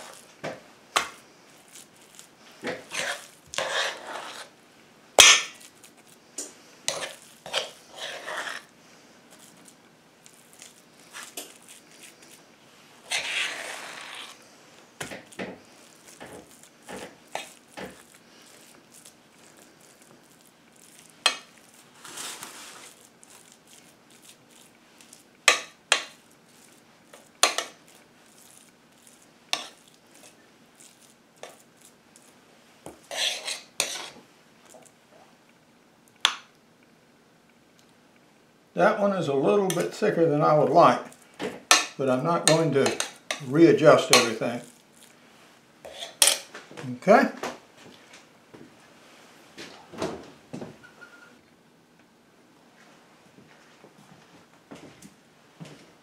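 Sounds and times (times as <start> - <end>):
utensil scraping a frying pan: 0.0 - 0.3, 2.5 - 4.6, 6.9 - 8.7, 13.0 - 14.4, 16.0 - 18.7, 21.2 - 23.0, 27.1 - 27.9, 29.5 - 30.4, 33.0 - 34.2, 41.7 - 44.7, 45.8 - 46.5.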